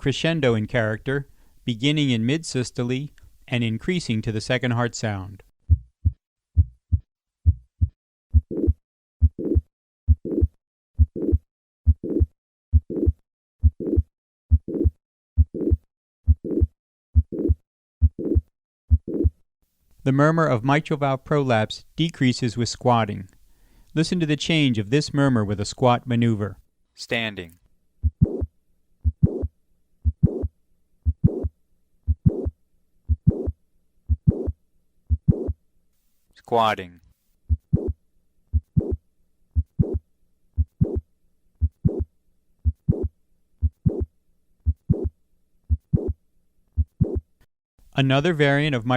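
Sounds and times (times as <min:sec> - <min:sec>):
heart murmur: 0:05.7 - 0:19.4, 0:28.0 - 0:31.5, 0:32.1 - 0:32.5, 0:33.1 - 0:35.6, 0:37.5 - 0:39.0, 0:39.6 - 0:40.0, 0:40.6 - 0:41.0, 0:41.6 - 0:45.1, 0:45.7 - 0:46.2, 0:46.8 - 0:47.3
heartbeat: 0:05.7 - 0:19.4, 0:28.0 - 0:31.5, 0:32.1 - 0:35.6, 0:37.5 - 0:39.0, 0:39.6 - 0:40.0, 0:40.6 - 0:41.0, 0:41.6 - 0:46.2, 0:46.8 - 0:47.3.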